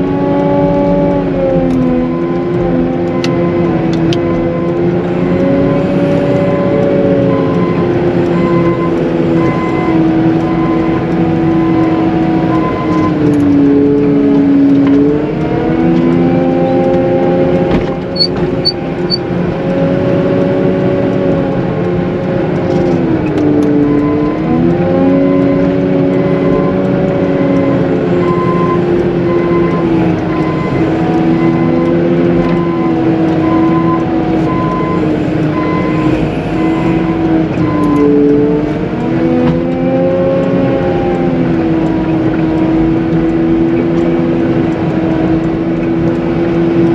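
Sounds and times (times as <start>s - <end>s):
diesel engine running under load: 0.0s - 46.9s
reverse alarm beeping: 5.6s - 13.2s, 28.2s - 38.3s
short high beeps: 28.2s - 31.8s.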